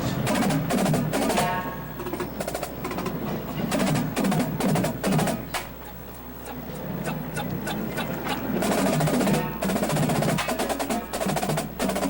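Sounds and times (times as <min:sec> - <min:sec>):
rapid drum strokes: 0:00.0 - 0:05.8, 0:08.5 - 0:12.0.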